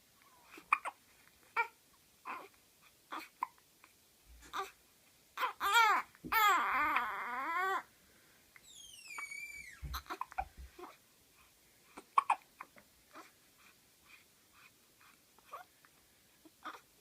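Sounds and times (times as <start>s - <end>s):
baby hiccuping: 0.5s - 1.0s, 3.1s - 3.6s, 9.8s - 10.5s, 12.0s - 12.8s
baby crying: 1.6s - 3.4s, 5.4s - 7.9s, 9.2s - 11.0s.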